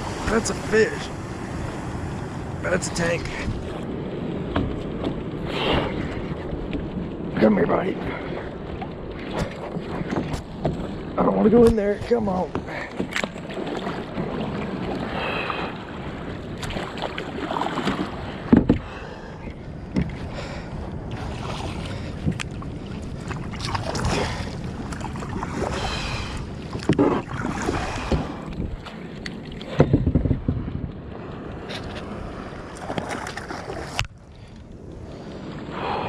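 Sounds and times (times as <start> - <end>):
water sloshing around kayak: 0.0 - 36.0
wind buffeting microphone: 0.0 - 36.0
knocks against hull: 4.5 - 5.2, 17.7 - 18.9, 19.9 - 20.2, 28.0 - 28.6, 29.7 - 30.6.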